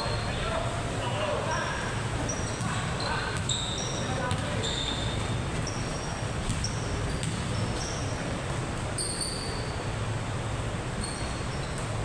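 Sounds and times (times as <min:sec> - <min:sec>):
indoor basketball game noise: 0:00.0 - 0:12.0
sneakers squeaking on court: 0:01.4 - 0:09.8, 0:11.0 - 0:12.0.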